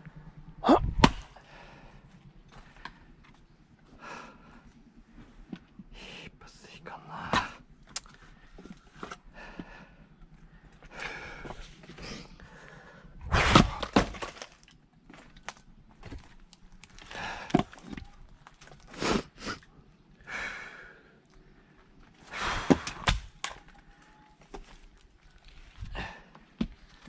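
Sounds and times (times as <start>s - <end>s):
heavy breathing: 0.0s - 3.2s, 3.9s - 4.8s, 7.1s - 14.0s, 16.9s - 18.1s, 18.9s - 23.1s, 25.8s - 26.4s
axe splitting firewood: 0.8s - 1.4s, 13.2s - 19.2s, 22.3s - 23.8s.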